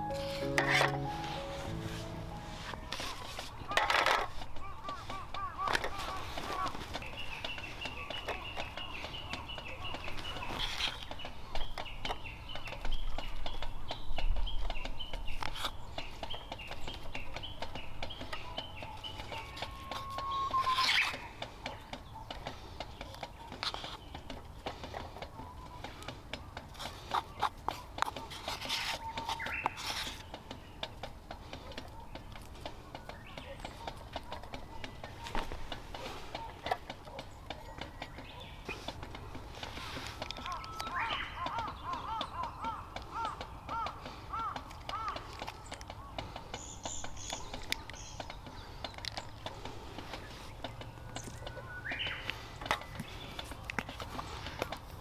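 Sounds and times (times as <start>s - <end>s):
high chirps: 0.0s - 3.2s
bird calling: 0.0s - 15.0s, 15.7s - 55.0s
small clicks and taps: 0.0s - 55.0s.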